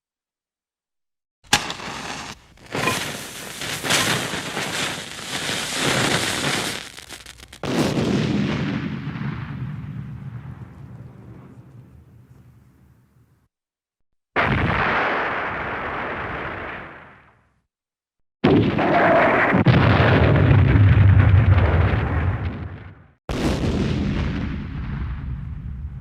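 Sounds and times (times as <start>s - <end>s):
crackling gunfire: 1.5s - 11.1s, 14.4s - 17.3s
explosion blast with deep rumble: 2.6s - 12.2s, 14.4s - 17.2s, 18.4s - 26.0s.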